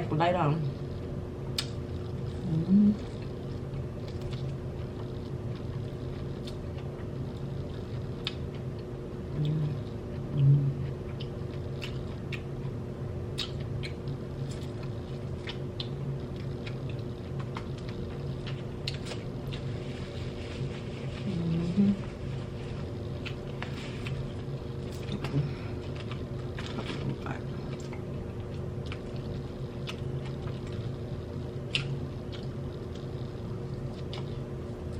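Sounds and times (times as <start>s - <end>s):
steady low hum: 0.0s - 34.9s
wet chewing clicks and smacks: 1.5s - 2.4s, 3.0s - 10.2s, 10.8s - 19.7s, 23.0s - 27.1s, 27.7s - 31.0s, 31.6s - 34.9s.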